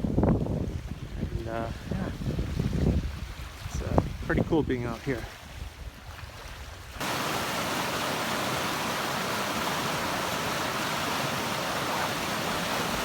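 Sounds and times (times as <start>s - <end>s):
running water rushing: 7.0s - 13.0s.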